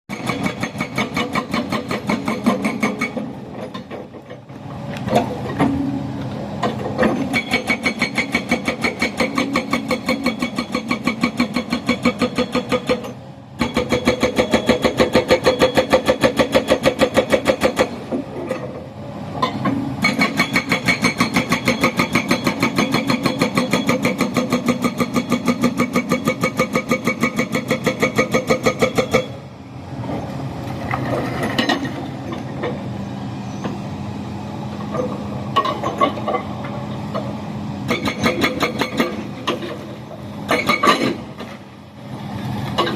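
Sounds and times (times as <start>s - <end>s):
hydraulic rock breaker hammering: 0.1s - 4.4s, 6.6s - 18.6s, 19.4s - 29.4s, 34.9s - 41.6s
excavator engine running: 0.1s - 42.9s.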